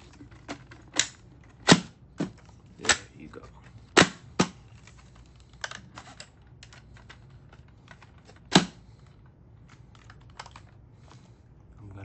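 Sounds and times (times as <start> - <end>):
loud plastic snap: 0.9 - 3.1, 4.0 - 4.6, 8.5 - 8.8.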